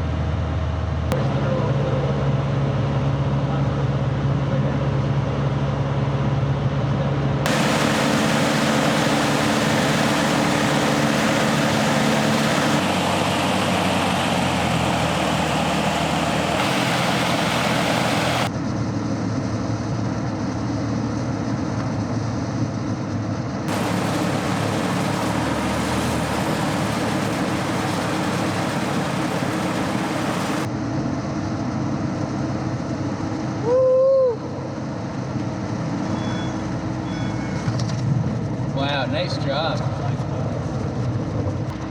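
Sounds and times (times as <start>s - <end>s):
aircraft engine and propeller drone: 7.5s - 18.5s, 23.7s - 30.7s.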